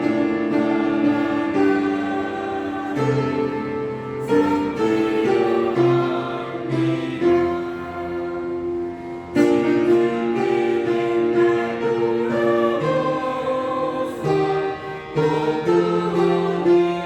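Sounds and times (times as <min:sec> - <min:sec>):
piano: 0:00.0 - 0:17.0.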